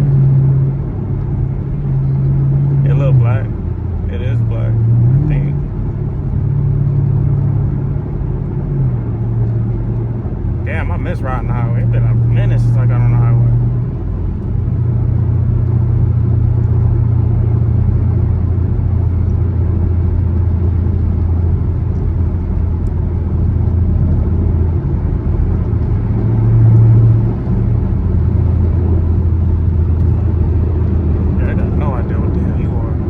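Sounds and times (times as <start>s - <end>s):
low exhaust drone: 0.0s - 33.0s
road noise: 0.0s - 33.0s.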